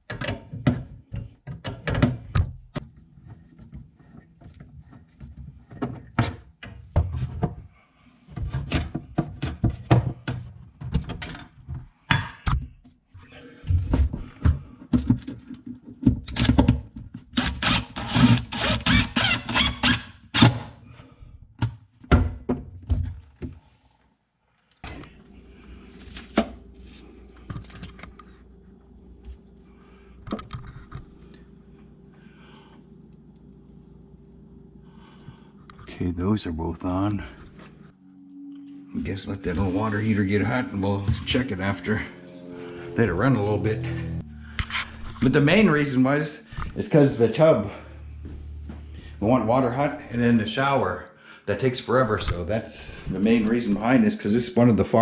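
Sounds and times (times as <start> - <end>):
knocks and clanks of tools: 0.0 - 7.6, 8.4 - 12.8, 13.7 - 18.7
steady low hum: 24.8 - 54.1.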